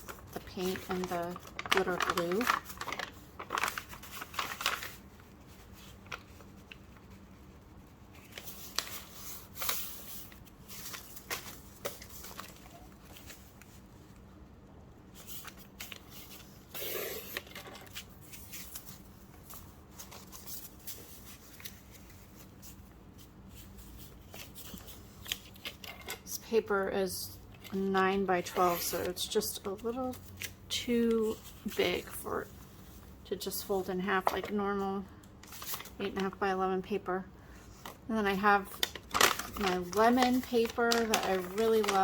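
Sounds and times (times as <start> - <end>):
paper rustling: 0.0 - 14.1, 17.3 - 26.1, 35.4 - 36.2, 38.6 - 42.0.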